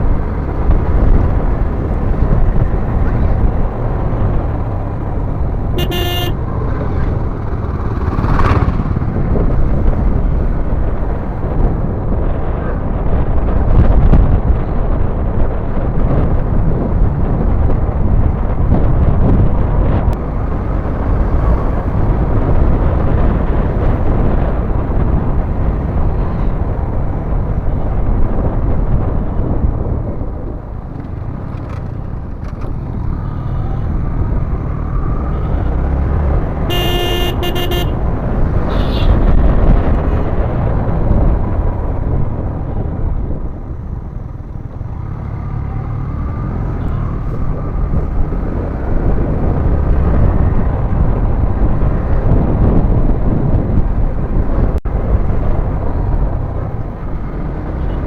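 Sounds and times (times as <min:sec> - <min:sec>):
motorcycle engine and riding noise: 0:00.0 - 0:58.0
vehicle horn honking: 0:05.8 - 0:06.4, 0:36.7 - 0:38.0, 0:38.7 - 0:39.2.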